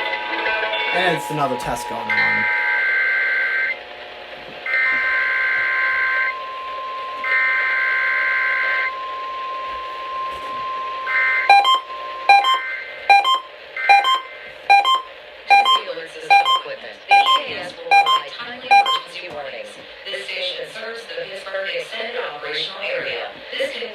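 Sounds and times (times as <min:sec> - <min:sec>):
steady single tone: 0:01.0 - 0:02.5
short repeated beeps: 0:11.5 - 0:19.0.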